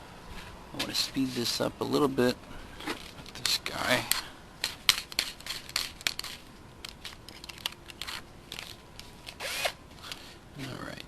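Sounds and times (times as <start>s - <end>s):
small parts clicking and rattling: 2.8s - 9.4s.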